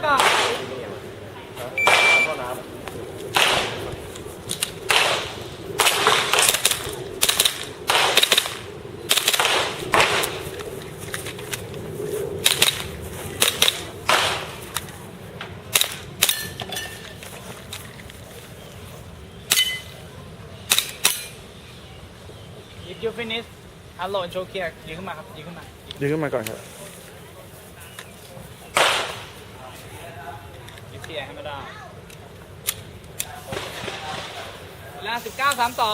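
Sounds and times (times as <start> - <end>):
airsoft pistol shots: 0.0 - 0.8, 1.8 - 2.4, 3.3 - 3.9, 4.9 - 10.5, 13.4 - 14.7, 28.8 - 29.3
high ringing tone: 1.8 - 2.5.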